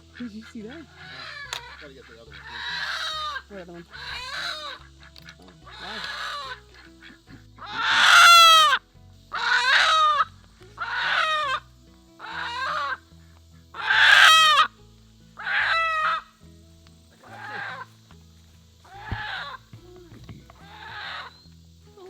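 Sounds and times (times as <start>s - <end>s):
low background music: 0.0s - 22.0s
chicken squawking loudly: 1.0s - 4.9s, 5.7s - 6.6s, 7.6s - 11.6s, 12.2s - 13.0s, 13.8s - 14.7s, 15.4s - 16.3s, 17.2s - 17.9s.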